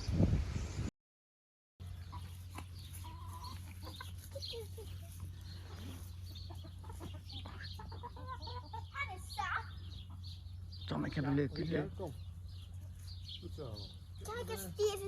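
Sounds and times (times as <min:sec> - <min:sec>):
hens clucking softly: 0:01.8 - 0:09.0.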